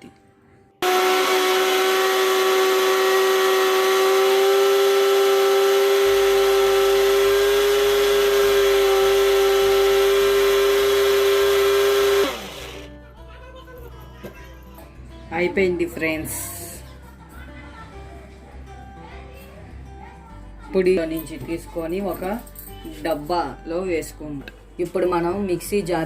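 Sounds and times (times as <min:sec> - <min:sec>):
mixer grinder motor whining: 0:00.8 - 0:12.9.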